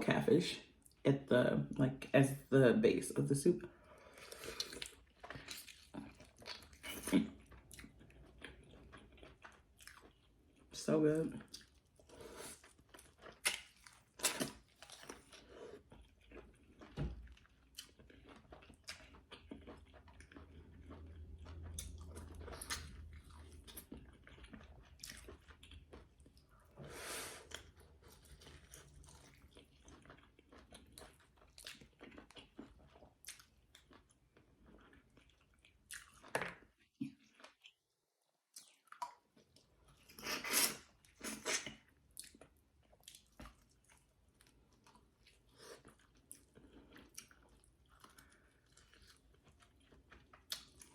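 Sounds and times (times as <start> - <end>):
wet chewing and smacking: 4.1 - 10.8, 11.4 - 26.8, 27.4 - 50.9
food crunching: 4.2 - 10.8, 11.4 - 26.7, 27.4 - 37.8.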